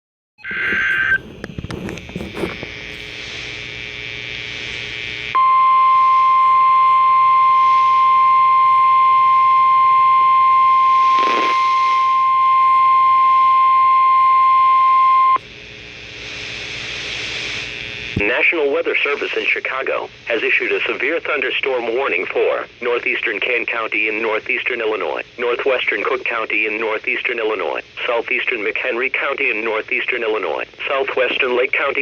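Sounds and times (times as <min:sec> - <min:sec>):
radio hiss: 0:00.4 - 0:05.4, 0:10.1 - 0:32.0
steady alarm tone: 0:00.4 - 0:15.4.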